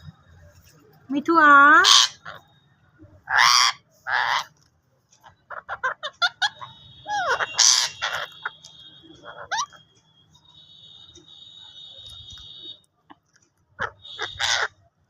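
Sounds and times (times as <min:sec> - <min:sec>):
parrot squawking: 0:01.8 - 0:02.4, 0:03.2 - 0:04.5, 0:05.5 - 0:08.6, 0:09.2 - 0:09.8, 0:13.8 - 0:14.8
bird chirps and clicks: 0:08.2 - 0:10.4, 0:12.0 - 0:13.6.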